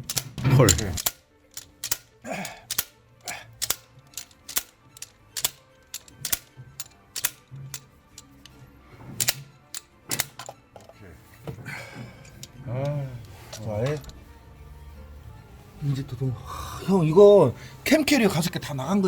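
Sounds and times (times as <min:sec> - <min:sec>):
ratchet wrench clicking: 0:00.0 - 0:08.6, 0:09.2 - 0:10.5.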